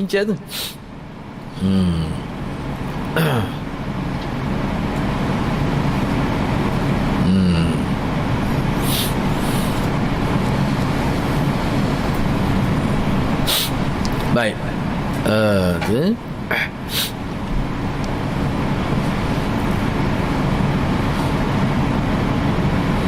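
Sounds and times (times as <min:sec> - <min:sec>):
short hiss: 0:00.5 - 0:00.8, 0:08.8 - 0:09.9, 0:13.5 - 0:13.8, 0:16.9 - 0:17.2
large vehicle engine running: 0:00.9 - 0:23.0.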